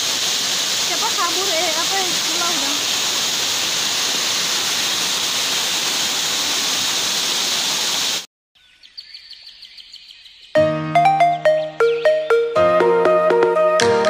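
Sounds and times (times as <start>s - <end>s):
waterfall rushing: 0.0s - 8.3s.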